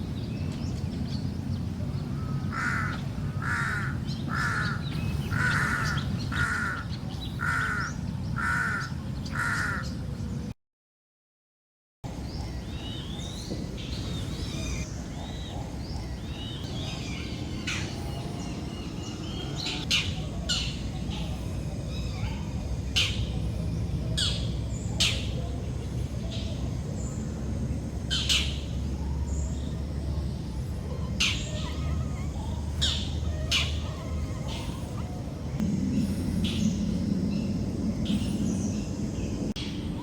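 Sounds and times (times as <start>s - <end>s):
birds twittering: 0.0s - 10.5s, 12.1s - 40.0s
low rumble: 18.2s - 40.0s.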